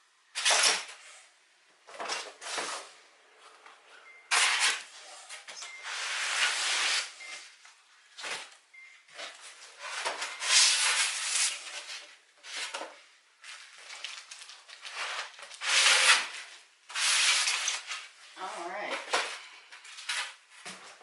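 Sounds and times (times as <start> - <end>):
packaging rustling and scraping: 4.3 - 7.4, 9.1 - 21.0.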